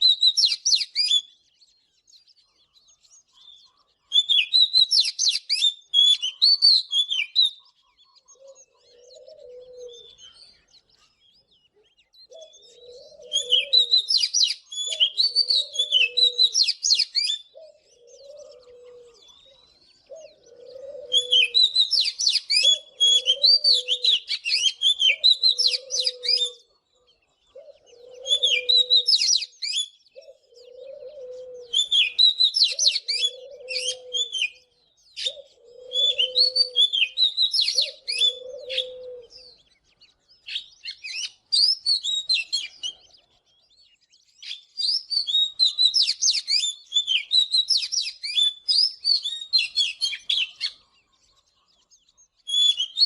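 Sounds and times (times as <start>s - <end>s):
bird singing whistled phrases: 0.0s - 1.5s, 4.1s - 7.8s, 12.1s - 18.5s, 19.2s - 26.7s, 28.1s - 30.4s, 31.6s - 39.6s, 40.4s - 43.0s, 43.7s - 50.8s, 52.5s - 53.0s
dove cooing: 6.2s - 10.7s, 11.8s - 39.7s.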